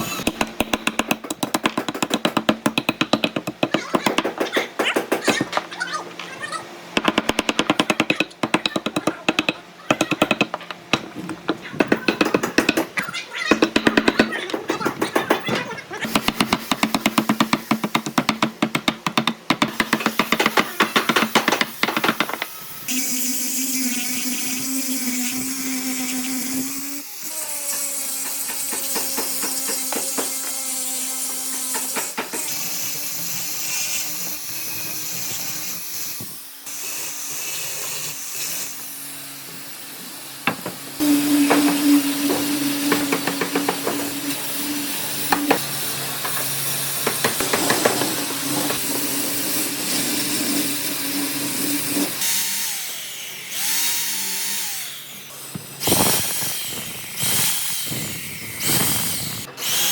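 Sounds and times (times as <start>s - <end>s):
power tool motor hum: 19.7s - 59.9s.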